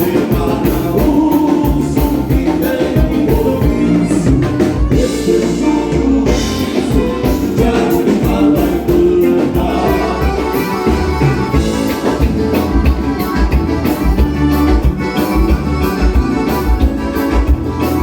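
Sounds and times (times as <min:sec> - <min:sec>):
person singing: 0:00.0 - 0:11.2
accordion: 0:00.0 - 0:18.0
dance band playing: 0:00.0 - 0:18.0
drum kit beat: 0:00.0 - 0:18.0.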